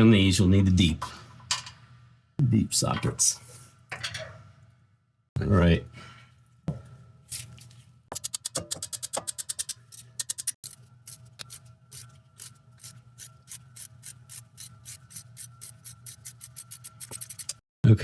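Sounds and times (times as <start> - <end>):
ratchet wrench clicking: 8.2 - 12.9, 13.5 - 17.6.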